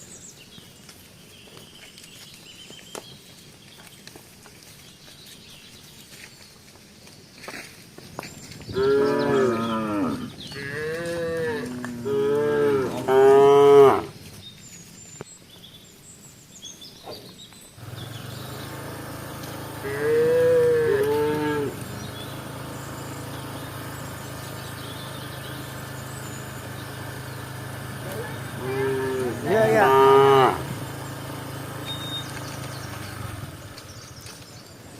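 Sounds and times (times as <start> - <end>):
cows mooing: 8.7 - 14.2, 17.8 - 32.4.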